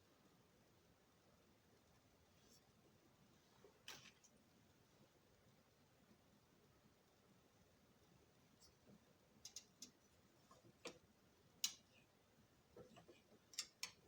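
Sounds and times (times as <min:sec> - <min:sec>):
objects clicking and tapping: 0:09.4 - 0:11.0.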